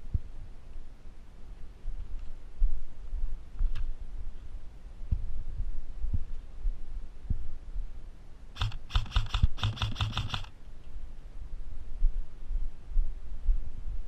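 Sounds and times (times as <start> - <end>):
wind on microphone: 1.8 - 8.0
airsoft gun firing bursts: 8.6 - 10.5.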